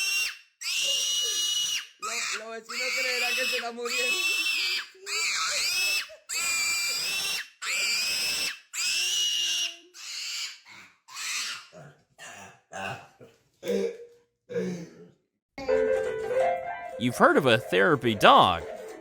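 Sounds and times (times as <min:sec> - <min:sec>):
piglet squealing: 0:00.0 - 0:11.8.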